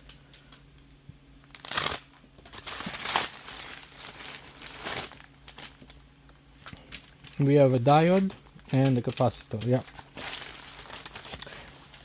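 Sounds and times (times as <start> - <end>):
packaging tearing and crinkling: 1.5 - 6.0, 8.1 - 12.0.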